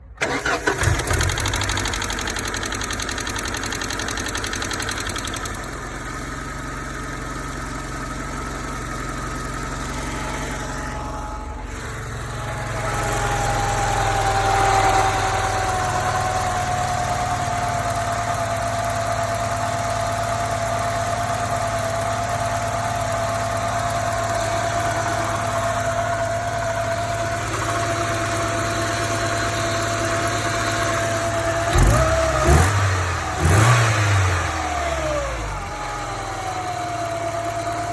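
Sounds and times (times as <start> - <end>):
car engine idling: 0.2 - 37.9
engine revving with whine: 26.9 - 36.8.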